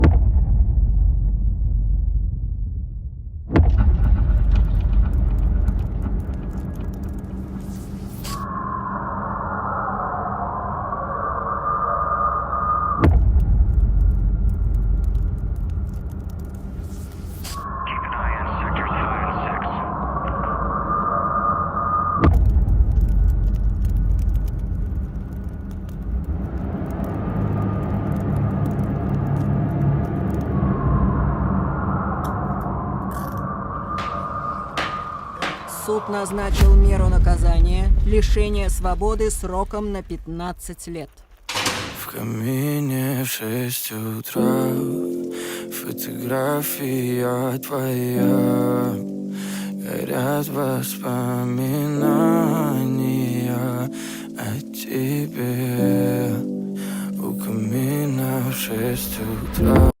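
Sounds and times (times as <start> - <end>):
sudden boom: 0.0 - 9.6, 12.9 - 16.0, 16.8 - 42.2, 58.8 - 60.0
deep rumble: 0.0 - 42.2, 58.7 - 60.0
small crackles: 4.0 - 8.4, 13.1 - 17.6, 22.3 - 30.5.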